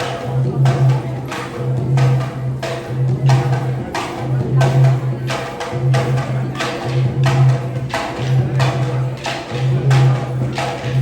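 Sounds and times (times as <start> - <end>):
low drum beat: 8.4 - 11.0.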